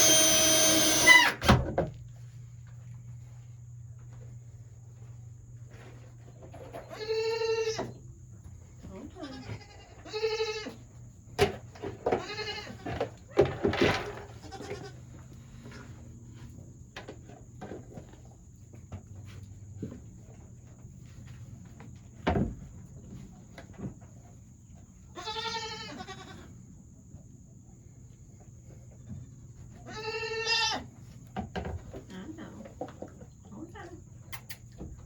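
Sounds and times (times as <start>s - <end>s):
goats bleating: 25.2s - 26.5s, 29.9s - 30.8s.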